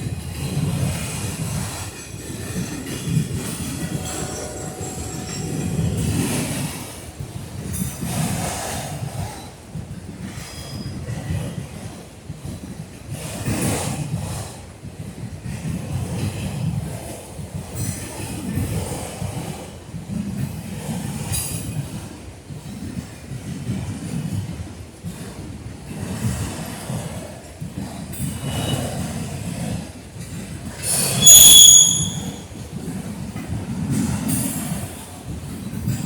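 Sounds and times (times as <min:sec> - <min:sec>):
freight train wheels rumbling: 0:00.0 - 0:36.0
high-pitched wheel screeches: 0:02.8 - 0:06.8, 0:31.2 - 0:32.5.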